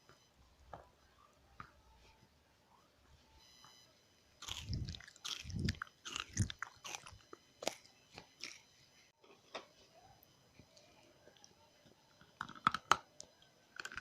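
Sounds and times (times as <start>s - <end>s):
clay crunching between teeth: 4.4s - 8.7s, 12.2s - 14.0s.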